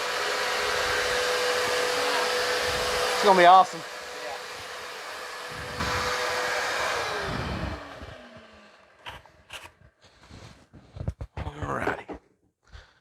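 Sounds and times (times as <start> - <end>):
motor whine winding down: 0.0 - 9.6
belt grinder running: 0.0 - 9.8.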